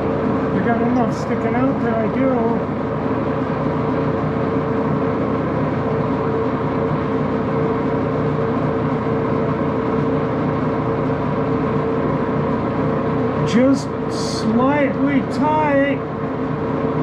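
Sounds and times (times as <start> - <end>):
lathe running: 0.0 - 17.0.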